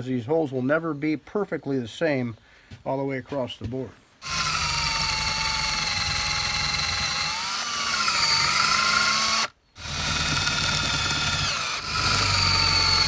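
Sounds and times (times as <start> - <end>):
electric drill boring into metal: 4.2 - 13.0.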